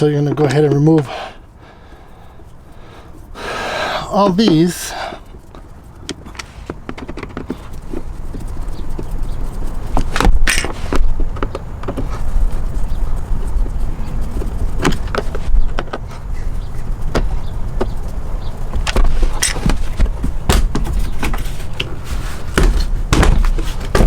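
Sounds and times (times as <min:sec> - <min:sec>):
steady low rumble: 0:07.5 - 0:18.9.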